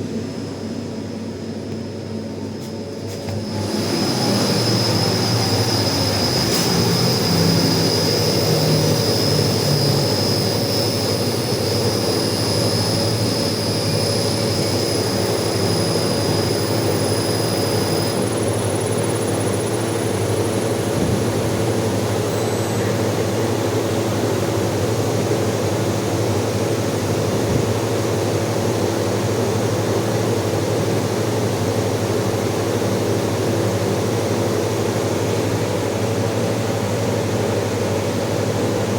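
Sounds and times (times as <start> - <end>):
water pump droning: 2.9 - 29.7.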